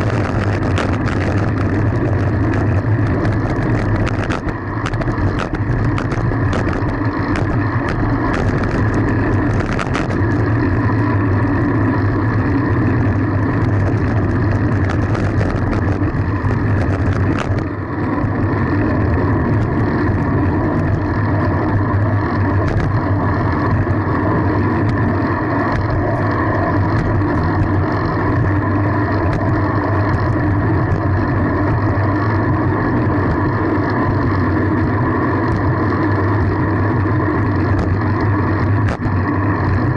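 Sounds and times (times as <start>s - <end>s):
road noise: 0.0s - 39.9s
wind rush: 0.0s - 39.9s.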